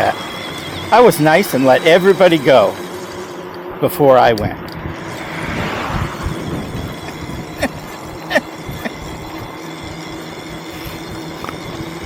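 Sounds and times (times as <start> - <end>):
rolling road rumble: 0.0 - 12.0
wind rushing over microphone: 4.0 - 9.6.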